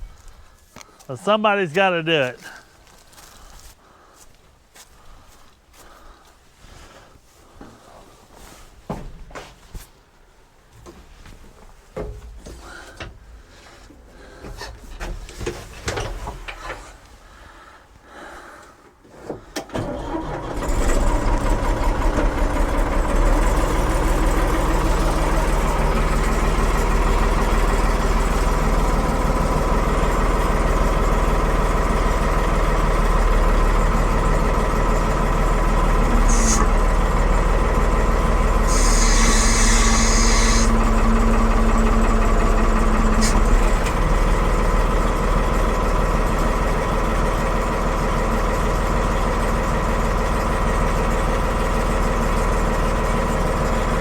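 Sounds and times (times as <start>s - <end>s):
backhoe engine running: 19.7s - 54.0s.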